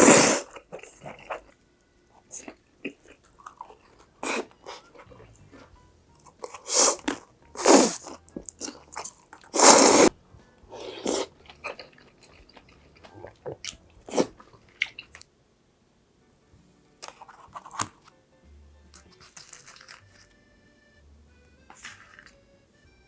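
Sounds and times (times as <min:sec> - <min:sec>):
crunchy chewing of crisp food: 0:00.0 - 0:10.1, 0:10.7 - 0:15.3, 0:17.0 - 0:18.1, 0:18.9 - 0:20.5, 0:21.7 - 0:22.4.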